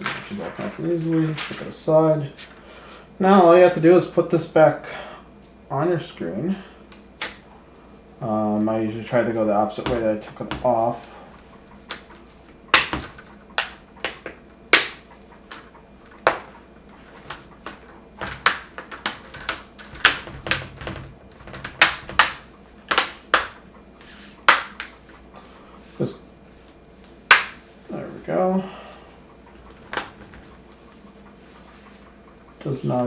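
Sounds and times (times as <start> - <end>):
plastic clips snapping: 11.9 - 16.5, 17.2 - 23.6.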